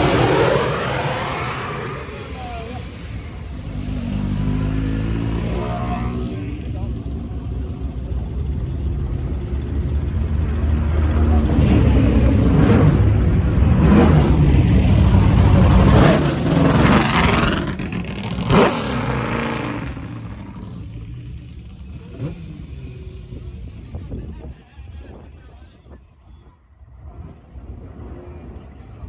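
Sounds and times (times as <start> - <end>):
racing cars revving past: 0.0 - 7.1, 9.4 - 21.0.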